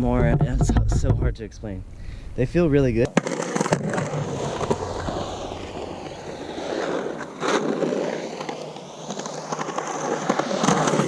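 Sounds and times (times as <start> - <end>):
skateboard rolling on concrete: 3.0 - 11.0.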